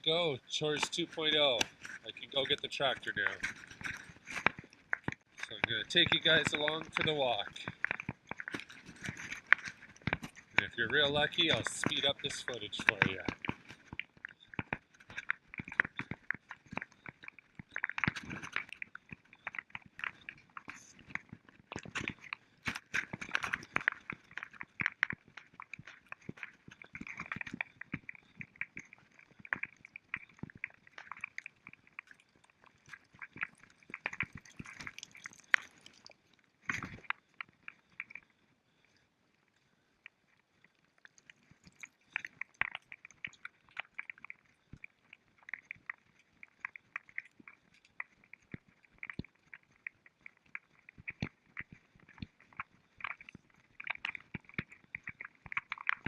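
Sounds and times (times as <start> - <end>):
crunching footsteps: 0.0 - 37.2.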